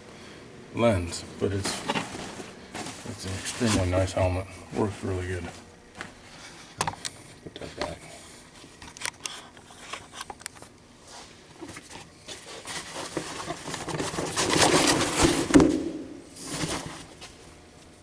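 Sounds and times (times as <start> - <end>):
rustling and clattering: 1.6 - 3.9, 11.6 - 17.4.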